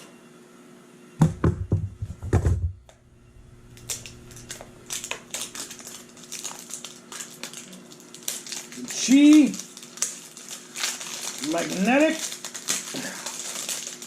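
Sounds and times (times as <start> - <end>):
packaging knocks and thumps: 1.2 - 2.8.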